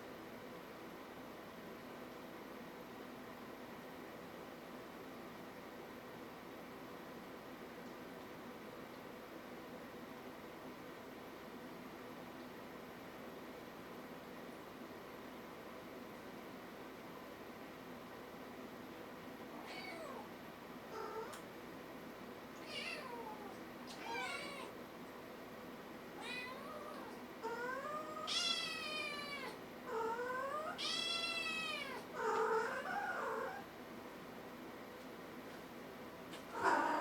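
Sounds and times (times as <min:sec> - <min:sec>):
kitten meowing: 0:30.7 - 0:33.3.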